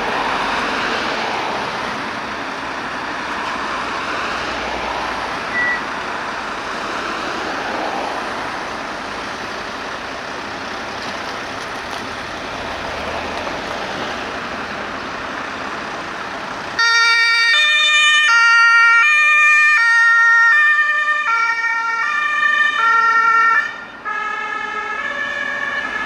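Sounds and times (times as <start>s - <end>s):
rushing road traffic: 0.0s - 26.0s
short high beep: 5.5s - 5.9s.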